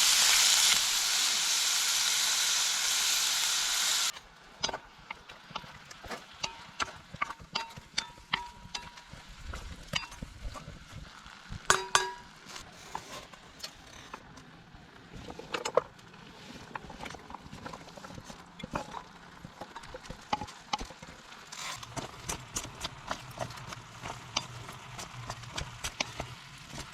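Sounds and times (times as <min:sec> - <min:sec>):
metal cookware clinking: 0:11.7 - 0:12.2.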